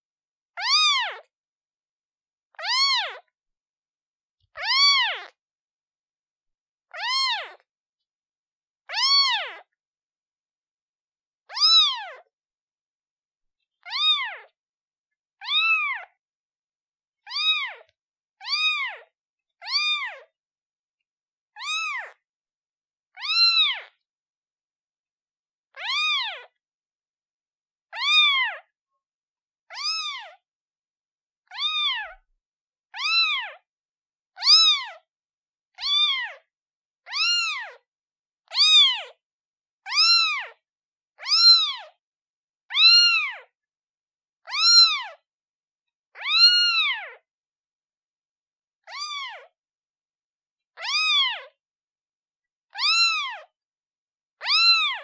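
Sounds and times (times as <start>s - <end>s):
kitten meowing: 0.6s - 1.3s, 2.6s - 3.3s, 4.6s - 5.4s, 6.9s - 7.7s, 8.9s - 9.7s, 11.5s - 12.3s, 13.8s - 14.5s, 15.4s - 16.2s, 17.3s - 20.3s, 21.6s - 22.2s, 23.2s - 23.9s, 25.7s - 26.6s, 27.9s - 28.7s, 29.7s - 30.4s, 31.4s - 32.3s, 32.9s - 33.6s, 34.4s - 35.0s, 35.8s - 36.5s, 37.1s - 37.8s, 38.5s - 39.2s, 39.9s - 40.6s, 41.2s - 42.0s, 42.7s - 43.5s, 44.4s - 45.2s, 46.2s - 47.2s, 48.8s - 49.5s, 50.7s - 51.5s, 52.7s - 53.5s, 54.4s - 55.0s.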